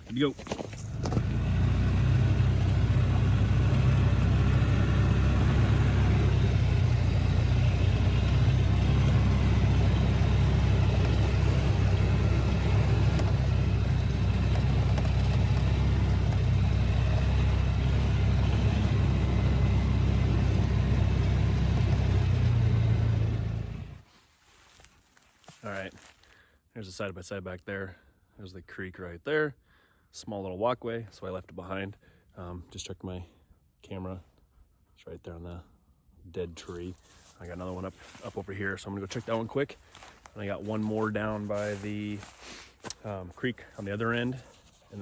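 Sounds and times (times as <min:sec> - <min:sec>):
utility vehicle engine drone: 0:00.7 - 0:24.0.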